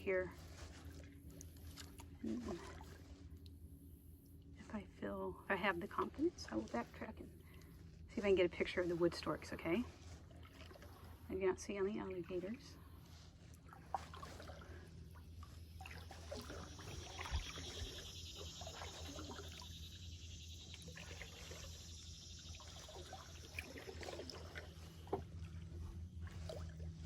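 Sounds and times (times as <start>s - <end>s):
kayak paddle strokes: 0.0s - 3.4s, 5.6s - 27.0s
small water splashes: 0.0s - 3.4s, 9.4s - 11.4s, 12.2s - 27.0s
water dripping off paddle: 13.6s - 27.0s.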